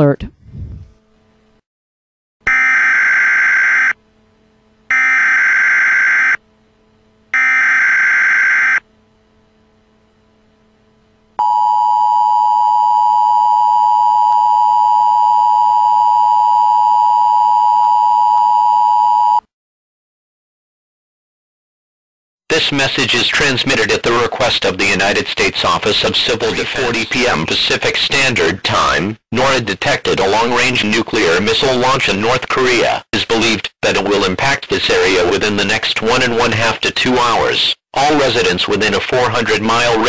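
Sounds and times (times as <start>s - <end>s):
digital header buzzing bursts: 2.5s - 4.0s, 4.8s - 6.5s, 7.3s - 8.9s.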